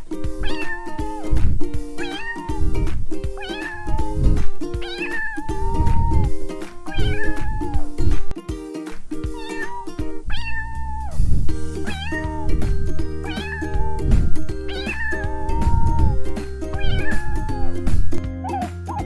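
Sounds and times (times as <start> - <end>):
music with chords and beat: 0.0 - 10.3, 11.1 - 19.0
cat meowing: 0.4 - 1.4, 2.0 - 2.8, 3.4 - 6.3, 6.9 - 7.9, 9.4 - 12.6, 13.2 - 16.2, 16.8 - 17.8.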